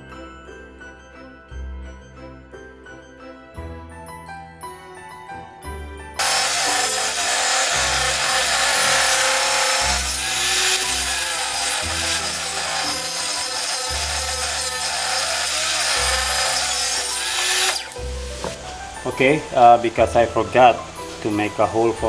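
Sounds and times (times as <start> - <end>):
power saw cutting wood: 6.2 - 18.6.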